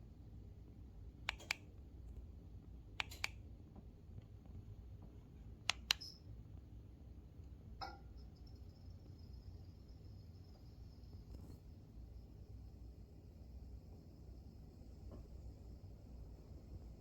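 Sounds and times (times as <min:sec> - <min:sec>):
steady low hum: 0:00.0 - 0:17.0
sharp clicks: 0:01.3 - 0:01.7, 0:03.0 - 0:03.4, 0:05.7 - 0:06.2.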